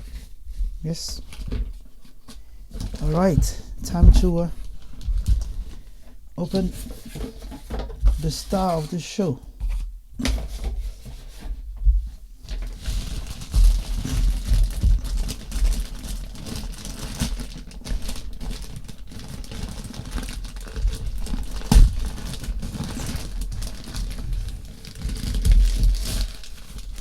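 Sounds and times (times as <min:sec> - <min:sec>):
packaging crinkling and rustling: 0:00.0 - 0:11.6, 0:12.4 - 0:27.0.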